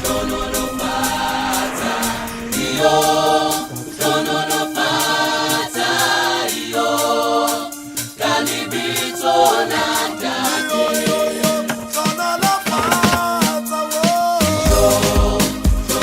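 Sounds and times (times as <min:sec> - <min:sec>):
gospel choral singing over beat: 0:00.0 - 0:16.0.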